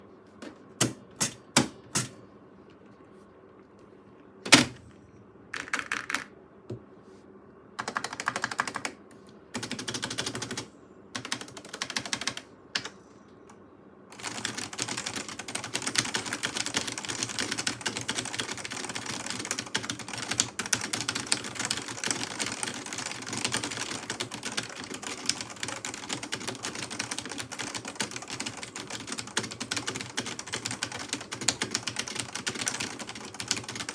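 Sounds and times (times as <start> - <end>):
typewriter keys clicking: 0.8 - 2.2.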